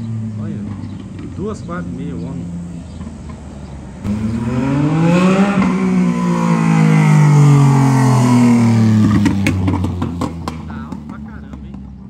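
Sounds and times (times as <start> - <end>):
motorcycle engine revving loudly: 4.0 - 12.0.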